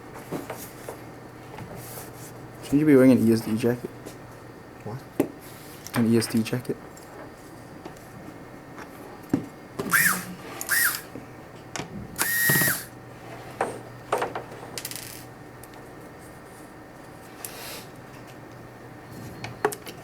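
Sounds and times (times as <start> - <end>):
power screwdriver motor whine: 9.9 - 11.1, 12.2 - 12.9.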